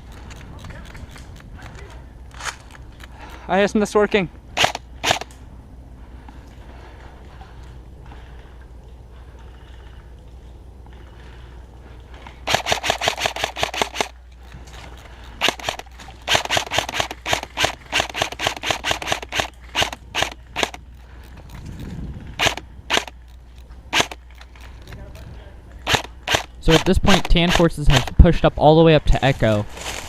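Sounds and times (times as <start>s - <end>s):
airsoft rifle firing clacks: 4.6s - 5.4s, 12.4s - 20.8s, 22.4s - 23.2s, 23.9s - 24.9s, 25.8s - 28.3s.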